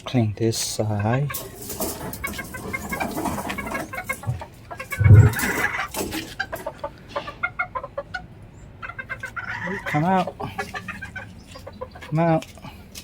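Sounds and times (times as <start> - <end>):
hens clucking: 0.6 - 13.0.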